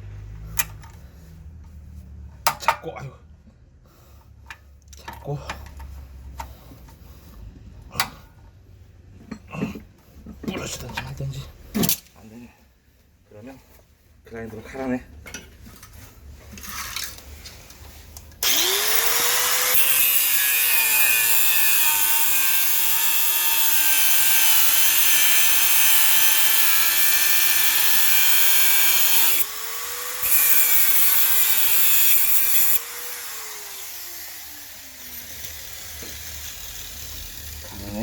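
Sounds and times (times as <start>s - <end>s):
angle grinder grinding steel: 18.4s - 38.0s.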